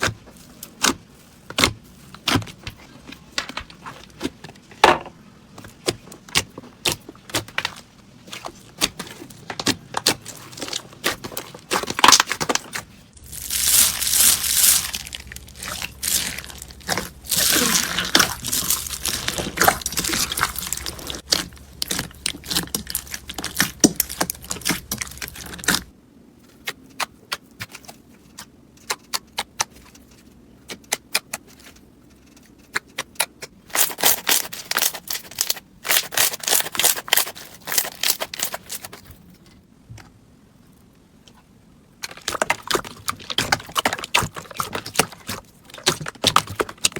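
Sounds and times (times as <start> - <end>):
slime crackling and popping: 9.6 - 25.9, 33.8 - 38.9.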